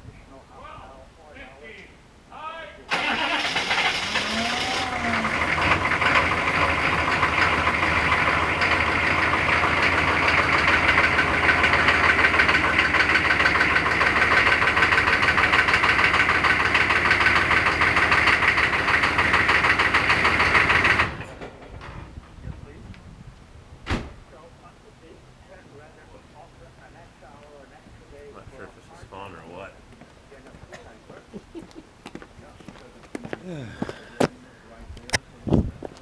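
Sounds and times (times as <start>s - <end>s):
diesel engine idling: 2.9s - 21.4s.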